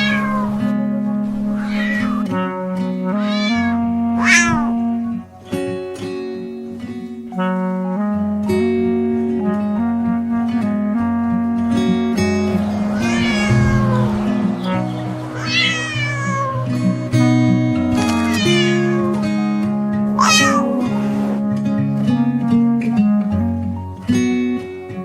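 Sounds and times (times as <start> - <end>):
cat meowing: 0.0 - 0.6, 1.3 - 2.3, 3.1 - 4.9, 12.5 - 16.8, 17.9 - 19.3, 20.2 - 21.0
acoustic guitar music: 0.0 - 25.0.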